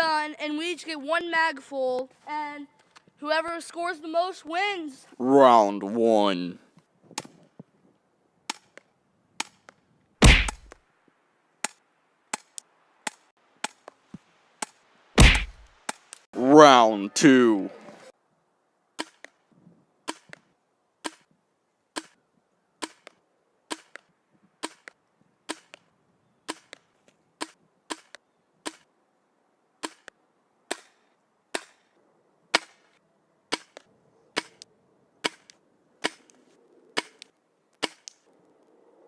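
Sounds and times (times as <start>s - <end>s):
airsoft gun shots: 10.2s - 10.8s, 15.2s - 15.7s.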